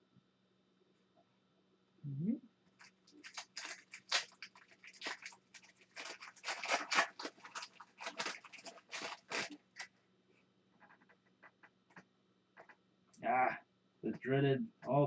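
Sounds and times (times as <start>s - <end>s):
foil wrapper crinkling and tearing: 2.8s - 9.9s.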